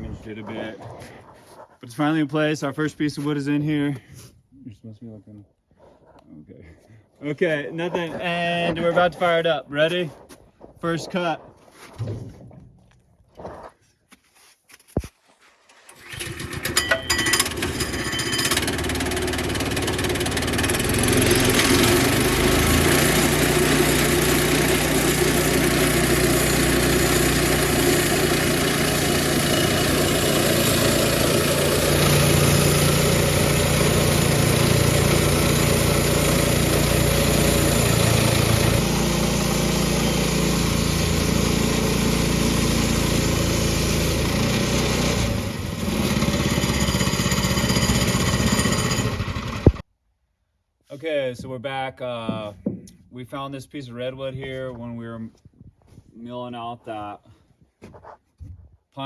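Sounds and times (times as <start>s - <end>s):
sawmill engine running: 15.8s - 49.8s.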